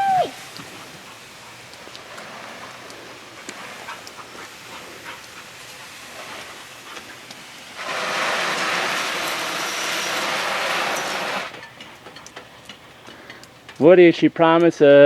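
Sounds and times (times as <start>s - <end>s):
garden hose spraying water: 0.0s - 15.0s
light ticks: 5.2s - 5.4s, 11.8s - 13.8s.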